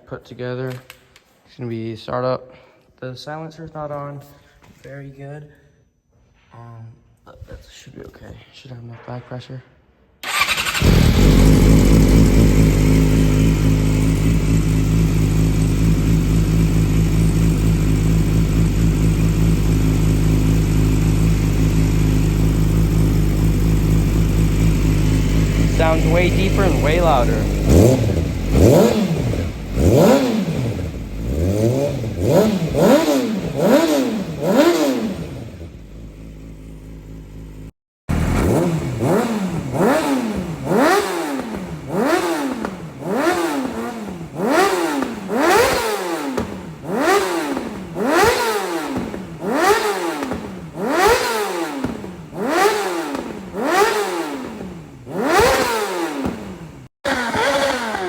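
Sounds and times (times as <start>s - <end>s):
motorcycle engine revving: 10.2s - 58.0s
motorcycle engine idling: 10.3s - 51.2s.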